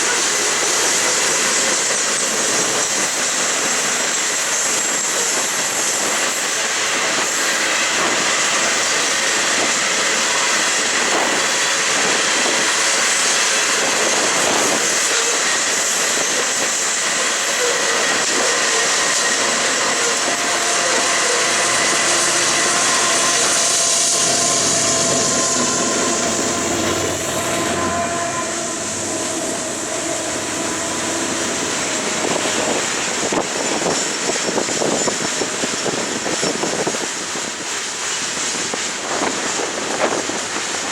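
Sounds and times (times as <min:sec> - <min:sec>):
high wheel squeal: 0:00.0 - 0:40.7
train wheels rumbling on rails: 0:00.0 - 0:40.9.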